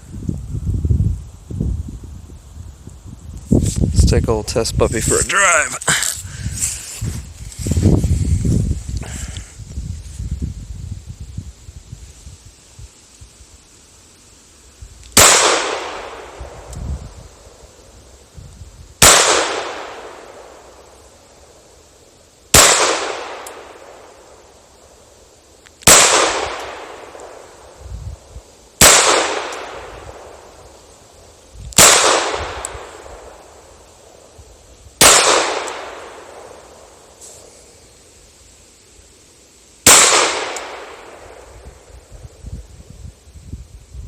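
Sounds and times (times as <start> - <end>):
pistol shots with echo: 15.2 - 16.4, 19.0 - 20.5, 22.6 - 23.8, 25.9 - 27.1, 28.8 - 29.9, 31.8 - 33.3, 35.0 - 36.5, 39.9 - 41.4.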